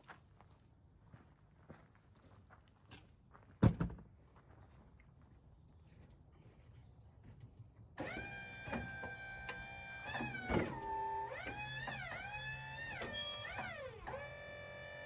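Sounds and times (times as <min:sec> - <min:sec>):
sawmill motor whining: 0:08.0 - 0:15.0.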